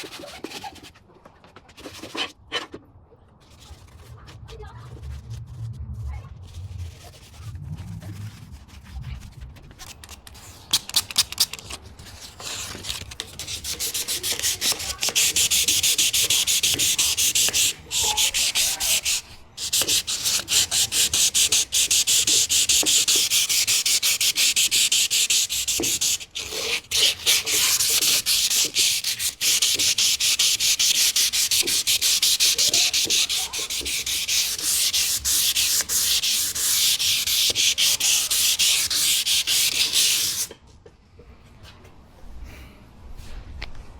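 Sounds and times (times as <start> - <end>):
sanding rasping strokes: 8.3 - 40.5.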